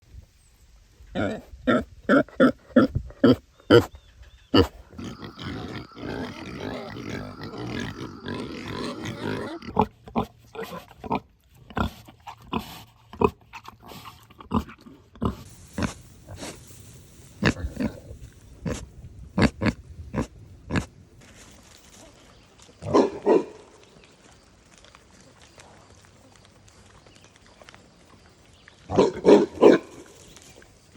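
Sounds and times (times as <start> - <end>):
pigs grunting: 1.2 - 16.6, 17.4 - 18.8, 28.9 - 30.1.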